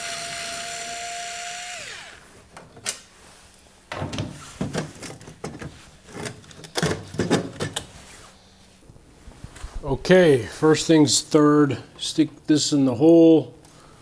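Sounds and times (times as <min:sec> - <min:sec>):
power drill spinning: 0:00.0 - 0:02.4.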